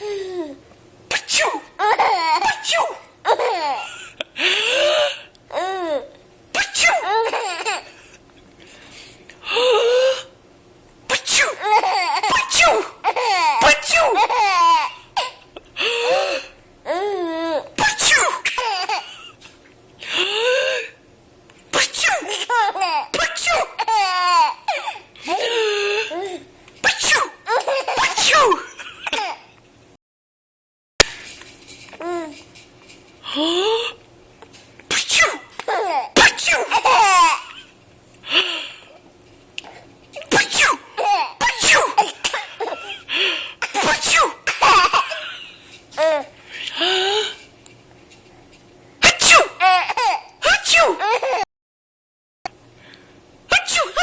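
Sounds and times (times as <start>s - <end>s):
person sneezing: 1.1s - 3.1s, 4.4s - 5.3s, 6.6s - 7.5s, 9.4s - 10.3s, 11.1s - 11.6s, 12.2s - 13.0s, 13.6s - 14.4s, 15.2s - 16.6s, 17.8s - 18.8s, 20.0s - 21.0s, 21.8s - 22.6s, 23.2s - 24.0s, 24.7s - 29.4s, 34.9s - 37.6s, 38.3s - 39.0s, 40.2s - 45.2s, 46.6s - 47.5s, 49.0s - 51.4s, 53.5s - 54.0s
baby laughing in high squeals: 1.8s - 2.7s, 3.3s - 3.9s, 5.5s - 7.9s, 11.4s - 15.0s, 22.2s - 26.3s, 26.9s - 28.5s, 35.2s - 37.5s
baby giggling and squealing: 11.4s - 15.0s.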